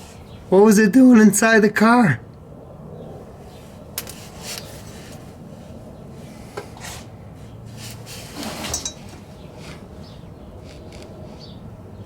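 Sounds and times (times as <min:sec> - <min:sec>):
rubbing and clattering: 0:07.7 - 0:11.5.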